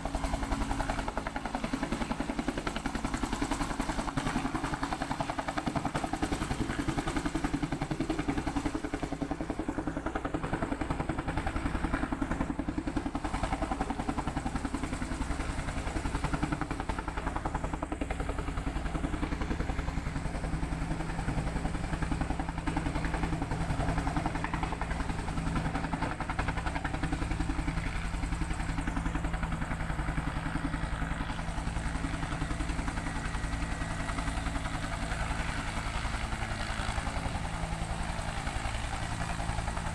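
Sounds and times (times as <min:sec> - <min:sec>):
helicopter engine hum: 0:00.0 - 0:39.9
helicopter rotor beat: 0:00.0 - 0:39.9.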